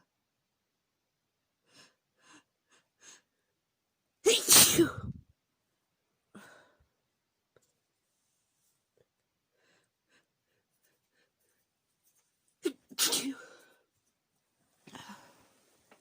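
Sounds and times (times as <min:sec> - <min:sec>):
loud human sneeze: 0:04.3 - 0:05.2, 0:12.7 - 0:13.6.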